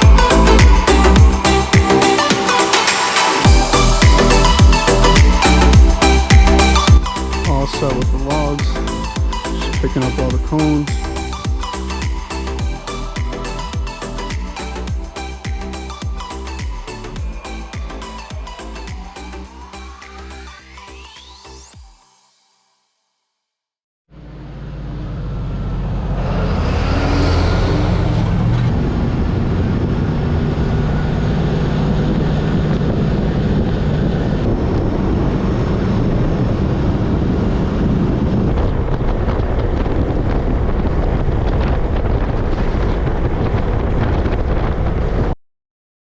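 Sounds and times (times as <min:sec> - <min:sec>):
loud wind noise: 0:00.0 - 0:19.5, 0:25.8 - 0:45.4
large engine running: 0:00.0 - 0:19.6, 0:24.1 - 0:39.4.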